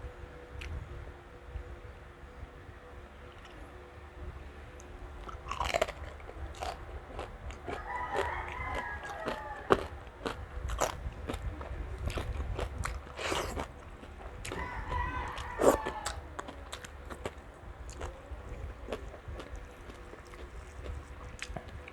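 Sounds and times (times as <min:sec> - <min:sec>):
chewing crispy fried pork: 0:04.8 - 0:21.9.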